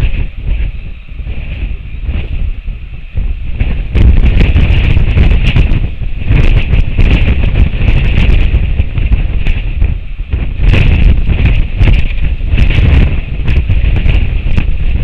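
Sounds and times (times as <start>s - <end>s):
crackles: 0.0s - 15.0s
strong wind buffeting microphone: 0.0s - 15.0s.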